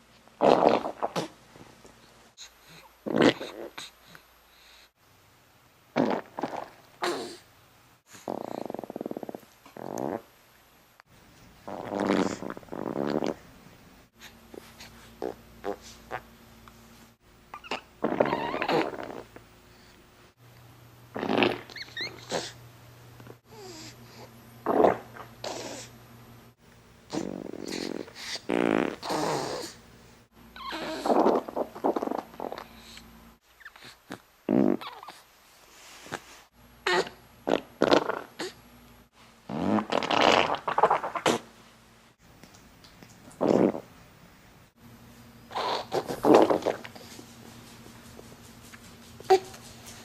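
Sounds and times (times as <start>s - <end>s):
baby passing gas: 0.4s - 1.4s, 6.0s - 7.4s, 11.7s - 13.4s, 27.1s - 29.8s, 30.7s - 32.7s, 39.5s - 41.5s, 43.4s - 43.9s, 45.5s - 47.0s.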